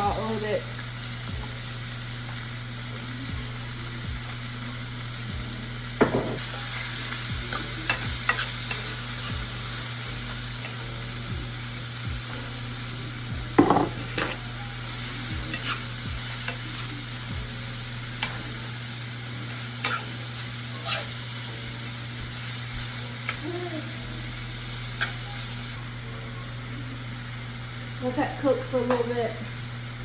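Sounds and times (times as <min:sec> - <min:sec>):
chicken sizzling in oil: 0:00.0 - 0:30.0
utensil knocking against pan: 0:06.0 - 0:06.4, 0:13.6 - 0:14.0.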